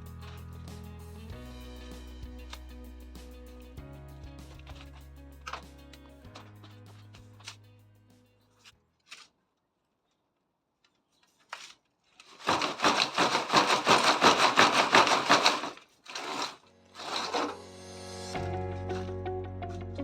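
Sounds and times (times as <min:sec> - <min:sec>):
rough rapid scraping: 0:12.2 - 0:17.6.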